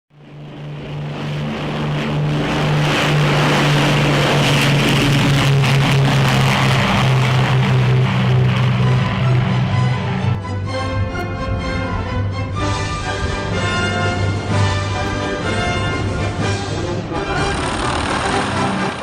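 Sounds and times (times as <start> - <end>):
low engine drone: 0.1 - 19.0
rushing noise: 15.4 - 19.0.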